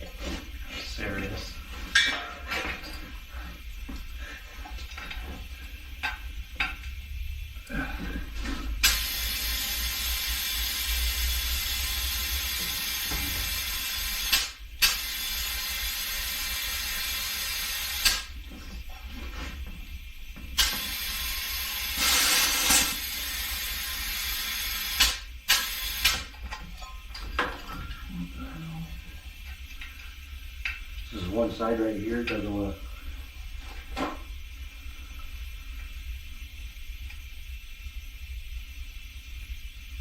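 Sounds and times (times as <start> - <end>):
compressed air hissing: 7.6 - 18.4, 20.5 - 26.3.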